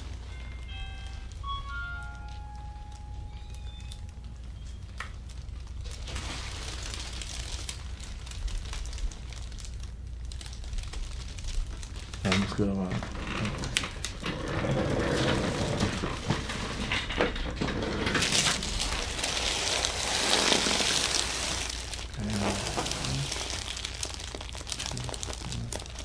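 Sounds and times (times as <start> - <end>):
rustling on treatment table: 12.2 - 24.0.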